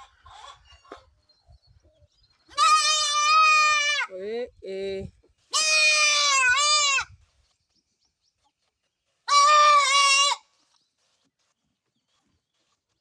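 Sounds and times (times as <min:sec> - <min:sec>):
goat bleating: 0:02.5 - 0:04.2, 0:05.5 - 0:07.1, 0:09.3 - 0:10.5.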